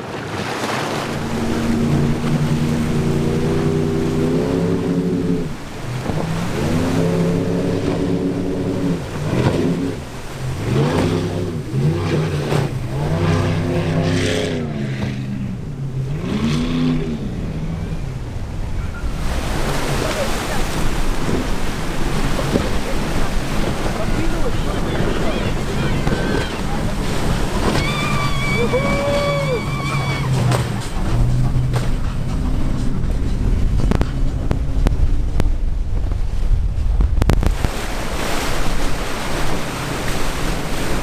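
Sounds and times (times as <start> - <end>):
boat engines revving: 0.0 - 41.0
surf rushing: 0.0 - 41.0
wind: 0.0 - 41.0.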